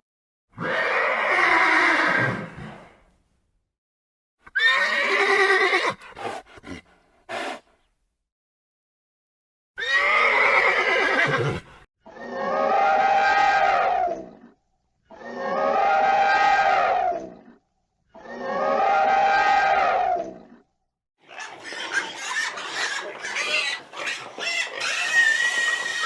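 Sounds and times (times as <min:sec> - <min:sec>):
horse neighing: 0:04.5 - 0:06.1, 0:09.8 - 0:14.2
horse snorting: 0:05.3 - 0:07.8.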